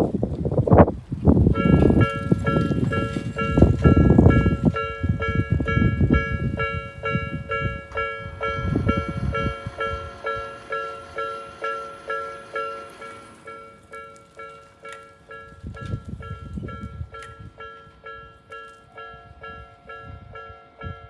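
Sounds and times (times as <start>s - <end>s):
low rumble: 1.4s - 13.7s
level crossing warning bell dinging: 1.5s - 21.0s.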